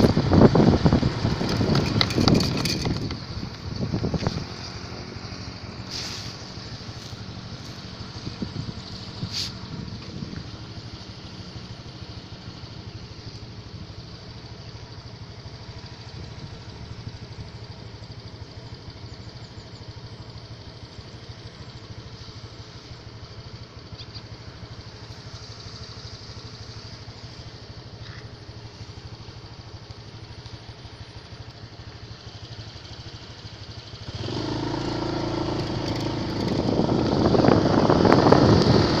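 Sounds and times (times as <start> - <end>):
wind rushing over microphone: 0.0 - 5.2, 8.2 - 10.6, 35.2 - 39.0
motorcycle engine running: 0.0 - 39.0.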